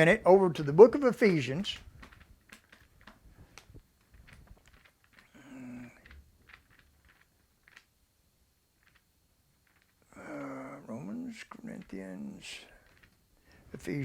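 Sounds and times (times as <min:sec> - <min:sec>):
pages rustling: 0:00.2 - 0:08.0.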